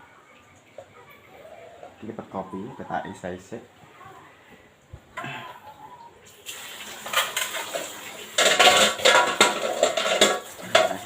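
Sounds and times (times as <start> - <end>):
dishes clattering: 7.0 - 11.0.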